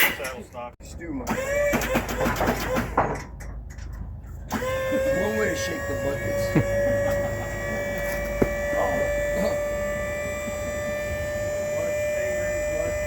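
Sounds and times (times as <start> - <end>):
electrical hum with whine: 4.6 - 13.0.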